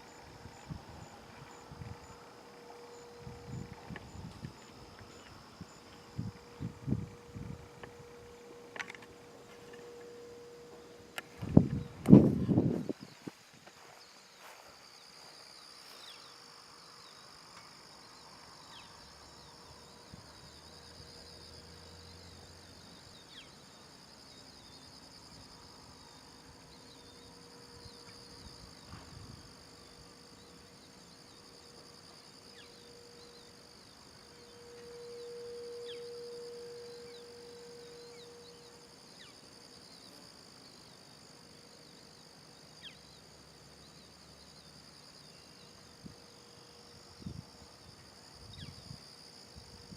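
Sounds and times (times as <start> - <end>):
insects chirring: 0.0 - 49.9
distant electronic siren tone: 0.6 - 12.8, 32.5 - 38.8.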